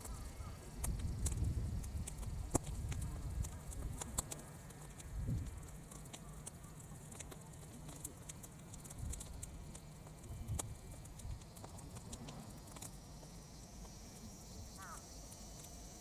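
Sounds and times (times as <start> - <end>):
wind on microphone: 0.0 - 4.3, 5.0 - 5.7
burning weeds crackling: 0.0 - 16.0.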